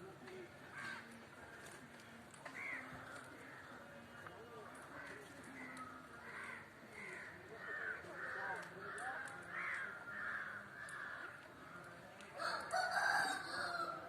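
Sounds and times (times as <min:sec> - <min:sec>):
flock of birds squawking: 0:05.0 - 0:11.8.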